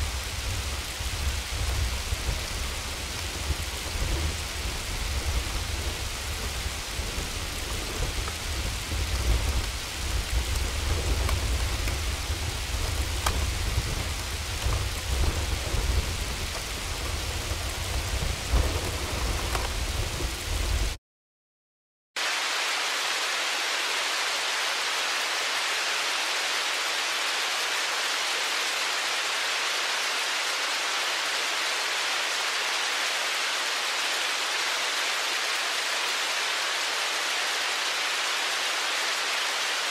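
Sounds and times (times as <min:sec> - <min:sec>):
hail and rain hitting: 0:00.0 - 0:21.0
hiss of falling hail and rain: 0:00.0 - 0:21.0, 0:22.2 - 0:39.9
sharp hail ticks: 0:09.1 - 0:19.8.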